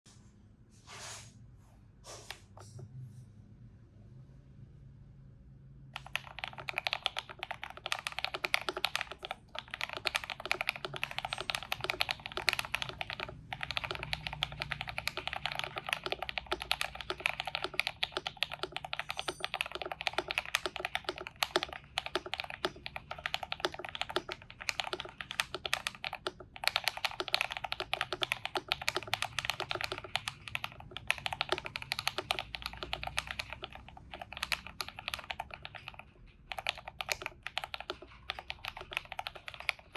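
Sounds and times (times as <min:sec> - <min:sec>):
mechanical keyboard typing: 0:06.0 - 0:39.9.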